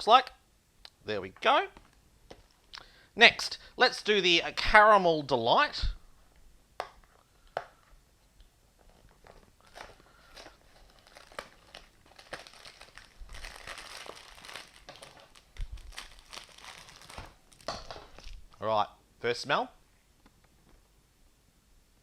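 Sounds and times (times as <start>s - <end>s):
wrapper crinkling: 8.8s - 18.6s
wrapper being torn open: 9.6s - 18.5s.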